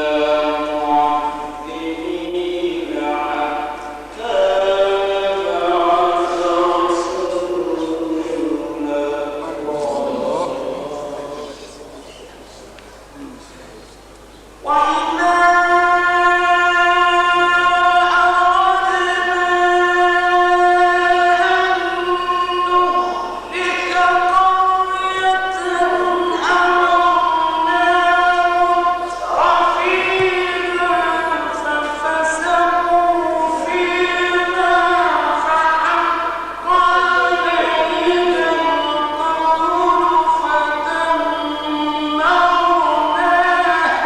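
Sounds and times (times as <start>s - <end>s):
man reciting melodically: 0.0s - 13.8s, 14.4s - 44.0s.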